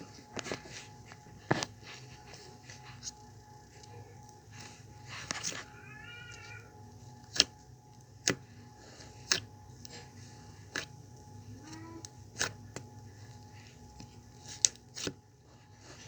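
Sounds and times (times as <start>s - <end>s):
cat meowing: 5.5s - 6.7s.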